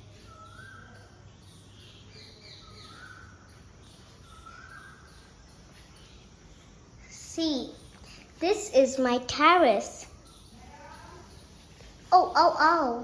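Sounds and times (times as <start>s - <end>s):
low background hum: 0.0s - 13.0s
small bird whistling: 2.2s - 3.6s, 4.2s - 5.3s.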